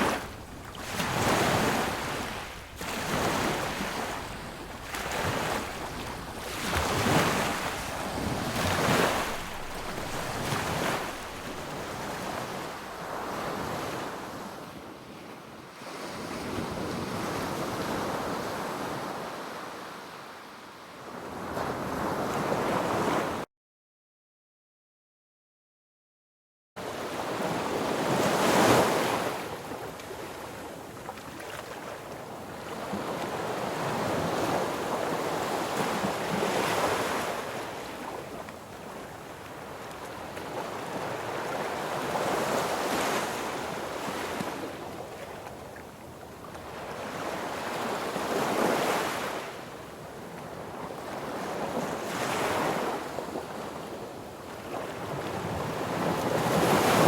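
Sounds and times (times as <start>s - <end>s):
sea waves breaking on beach: 0.0s - 14.6s, 26.9s - 54.0s, 54.6s - 57.0s.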